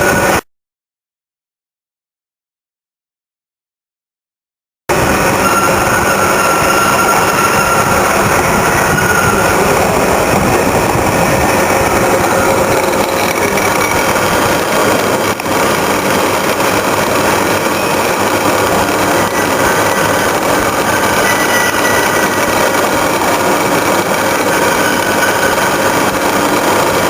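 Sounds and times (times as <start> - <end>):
gearbox running: 11.8 - 26.8.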